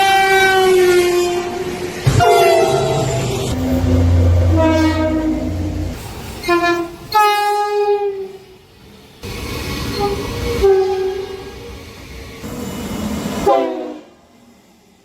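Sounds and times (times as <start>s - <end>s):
train horn blasts: 0.0s - 8.4s, 10.0s - 11.5s, 13.4s - 14.2s
train rumble: 0.0s - 15.0s.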